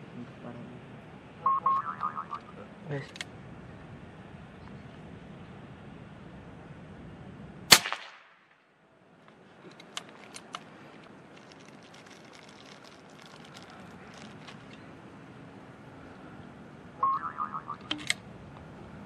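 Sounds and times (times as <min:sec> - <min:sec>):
air rifle shot crack: 0:07.7 - 0:08.6.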